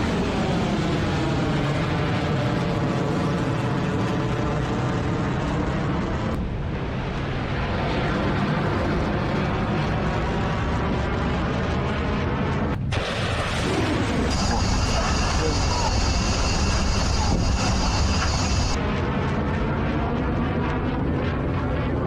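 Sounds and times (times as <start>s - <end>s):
rocket motor roaring: 12.8s - 18.8s.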